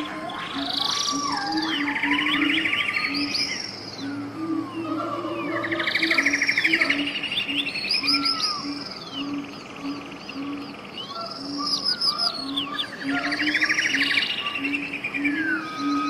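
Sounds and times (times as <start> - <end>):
birds singing trills and whistles: 0.0 - 16.0.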